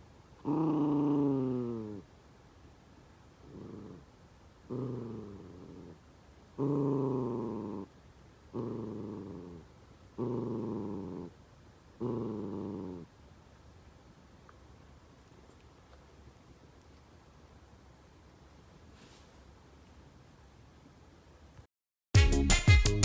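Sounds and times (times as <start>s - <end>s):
dog growling: 0.4s - 2.1s, 3.4s - 6.0s, 6.6s - 7.9s, 8.5s - 11.4s, 12.0s - 13.1s.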